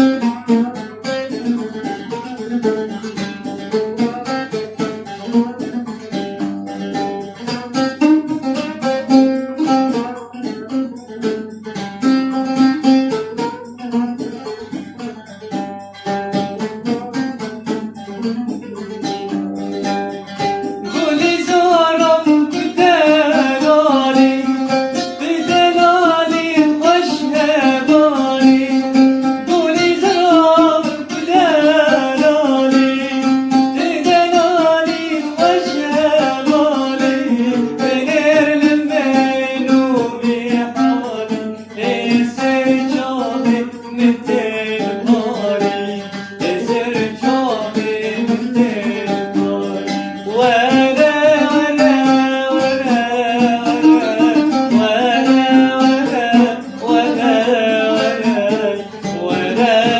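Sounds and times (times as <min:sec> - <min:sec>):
plucked string instrument: 0:00.0 - 0:59.9
man singing: 0:20.8 - 0:59.9.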